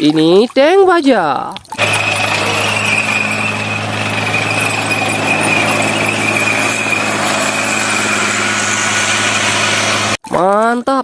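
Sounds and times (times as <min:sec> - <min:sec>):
motor running steadily: 0:01.8 - 0:10.2.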